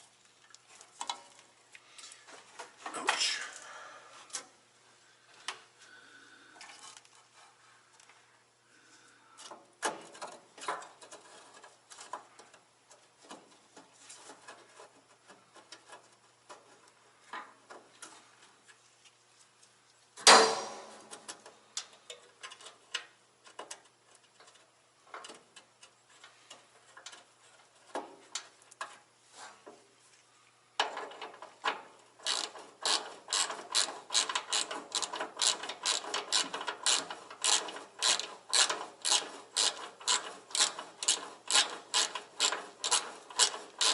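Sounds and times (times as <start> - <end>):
metallic clank: 20.2 - 21.2
ratchet wrench clicking: 32.2 - 43.9.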